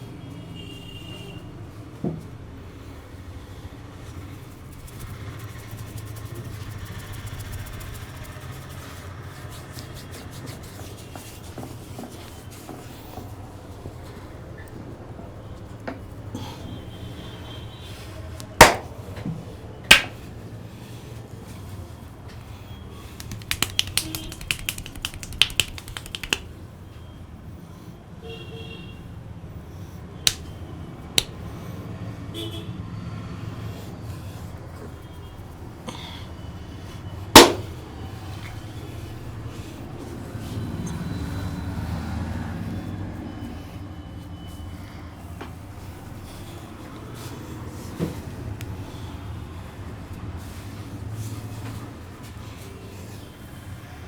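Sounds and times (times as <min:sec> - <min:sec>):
hands crackling on scalp: 0:04.6 - 0:11.4, 0:19.9 - 0:20.2, 0:23.1 - 0:26.5, 0:30.3 - 0:30.5, 0:37.4 - 0:37.7
sharp snapping clicks: 0:19.9 - 0:20.1, 0:23.2 - 0:26.5, 0:30.3 - 0:30.5.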